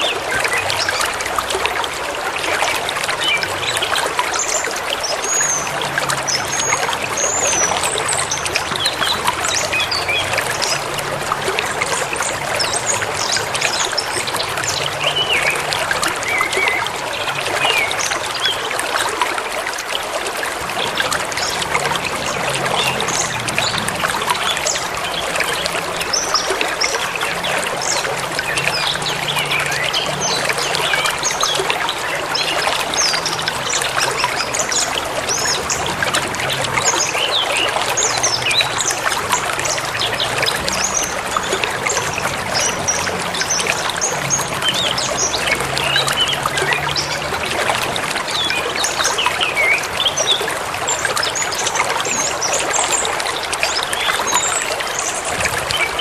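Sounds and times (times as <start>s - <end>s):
river running: 0.0s - 56.0s.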